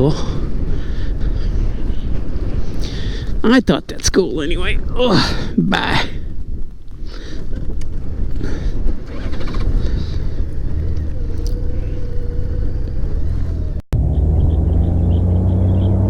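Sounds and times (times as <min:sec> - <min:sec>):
wind noise on microphone: 0:00.0 - 0:16.0
engine low rumble: 0:07.2 - 0:16.0.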